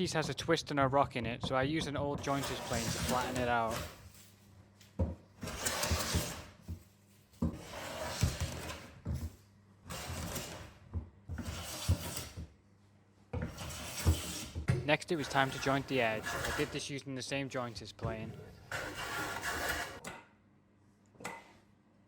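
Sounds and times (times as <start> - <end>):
plane knocking on wood: 1.4 - 3.9, 13.4 - 14.8.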